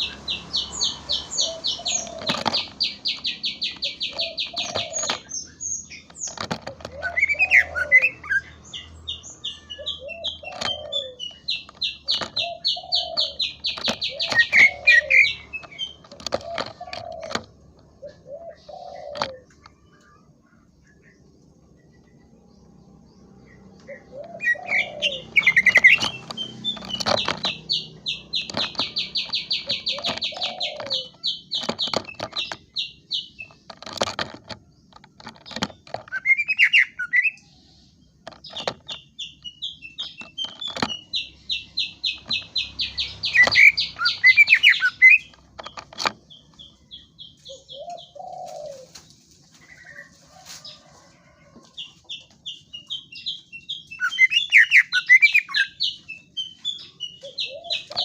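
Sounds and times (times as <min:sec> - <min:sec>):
bird singing: 0:00.0 - 0:58.0
bird clicking notes: 0:00.1 - 0:08.2, 0:10.1 - 0:17.9, 0:23.8 - 0:37.4.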